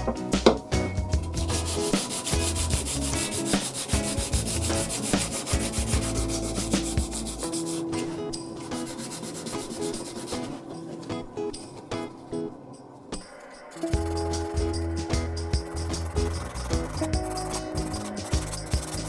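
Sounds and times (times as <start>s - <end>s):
hand-sanding wood: 1.4s - 7.9s, 8.8s - 10.6s, 13.7s - 14.8s, 15.7s - 19.0s.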